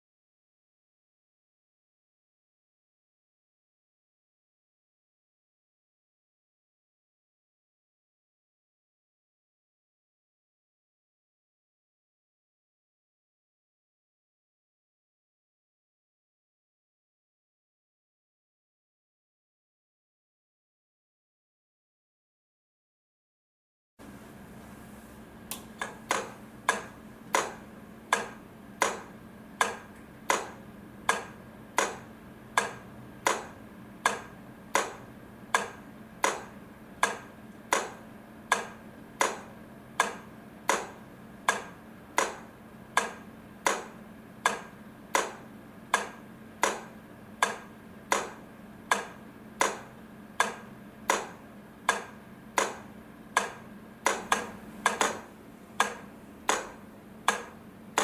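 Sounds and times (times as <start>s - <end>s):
steady low hum: 24.0s - 58.0s.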